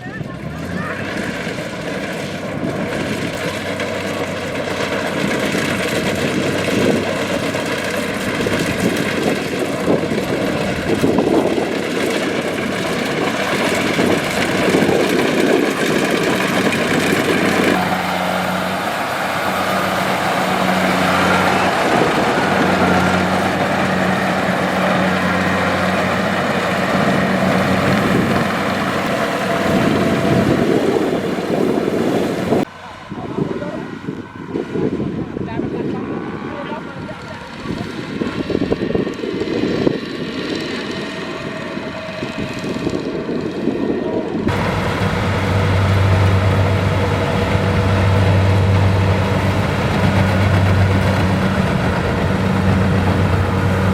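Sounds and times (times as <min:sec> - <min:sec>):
combine harvester engine and machinery: 0:00.0 - 0:53.9.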